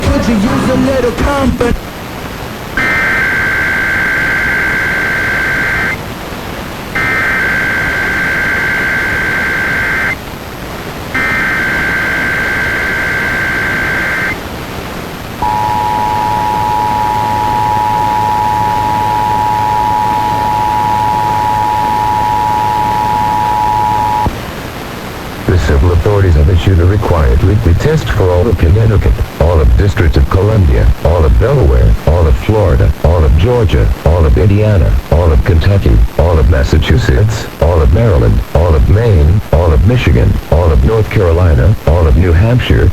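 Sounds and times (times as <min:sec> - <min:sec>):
radio hiss: 0:00.0 - 0:42.9
screeching data tones: 0:02.8 - 0:06.0, 0:07.0 - 0:10.2, 0:11.1 - 0:14.4, 0:15.4 - 0:24.3
two-tone attention signal: 0:15.4 - 0:24.3.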